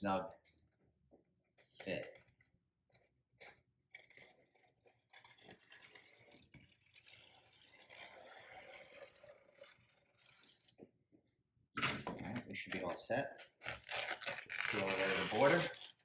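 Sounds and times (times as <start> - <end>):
hand tool scraping on glass: 4.0 - 10.8, 11.8 - 16.0.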